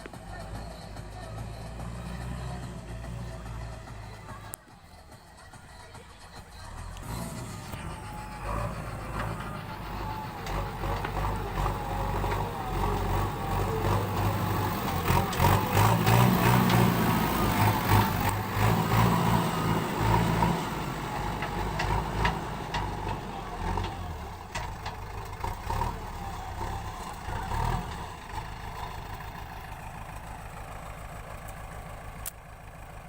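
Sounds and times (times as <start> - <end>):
diesel engine working hard: 0.0 - 33.0.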